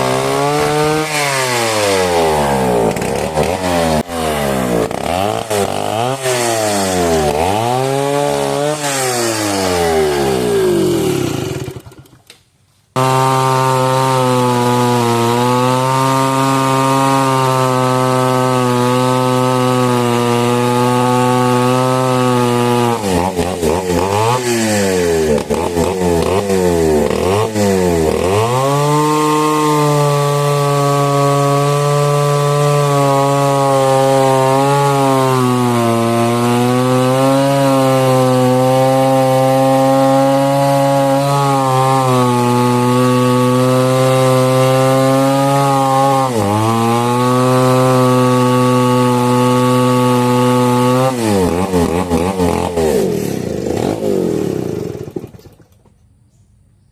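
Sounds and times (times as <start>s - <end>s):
chainsaw revving and cutting wood: 0.0s - 55.9s.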